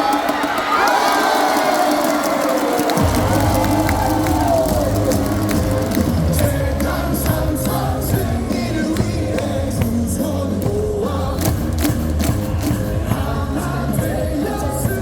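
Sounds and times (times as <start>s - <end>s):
stadium music with heavy bass: 0.0s - 15.0s
crowd singing along: 4.0s - 15.0s.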